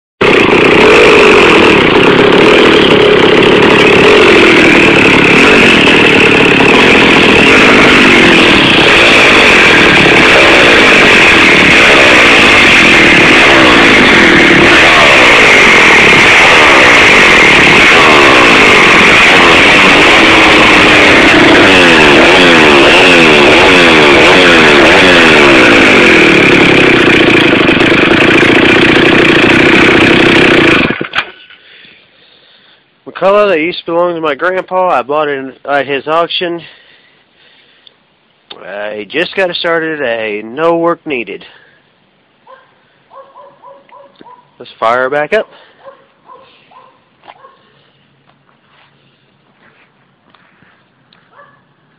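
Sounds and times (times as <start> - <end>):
two-stroke chainsaw engine revving: 0.2 - 31.6, 38.5 - 41.8, 43.3 - 46.8.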